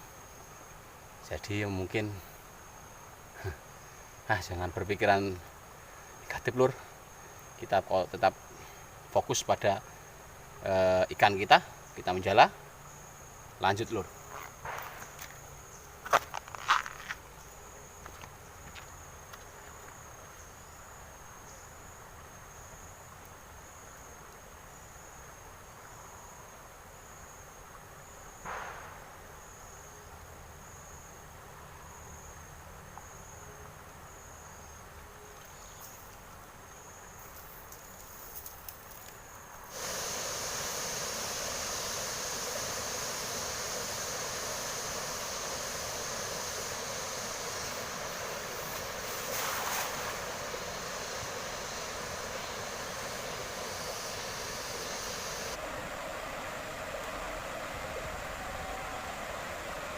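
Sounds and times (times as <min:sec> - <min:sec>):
insects trilling: 0:00.0 - 0:59.9
loud steady rushing noise: 0:39.7 - 0:59.9.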